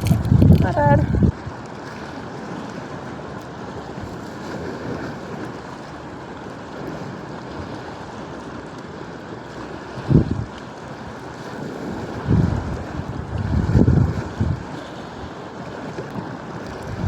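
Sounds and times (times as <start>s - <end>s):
wind on microphone: 0.0s - 1.6s, 10.0s - 10.6s, 11.6s - 15.4s, 16.6s - 17.0s
sea waves washing on shore: 0.0s - 17.0s.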